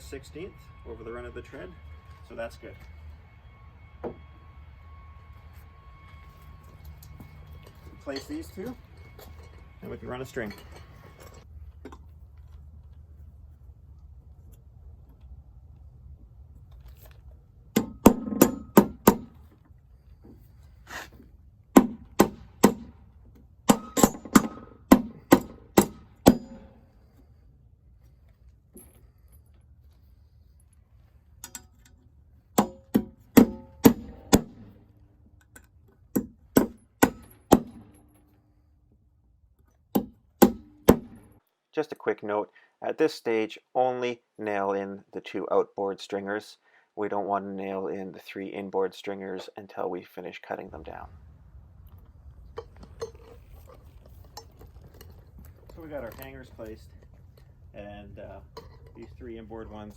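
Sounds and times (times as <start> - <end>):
hammer driving nails into wood: 17.8 - 19.4, 21.8 - 23.0, 23.7 - 26.6, 32.6 - 34.7, 36.1 - 38.0, 40.0 - 41.3.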